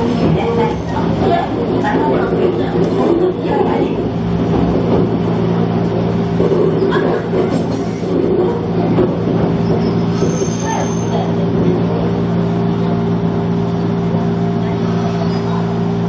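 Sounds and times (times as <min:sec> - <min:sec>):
wheels rumbling on track: 0:00.0 - 0:16.0
high-pitched wheel squeals: 0:09.6 - 0:11.3.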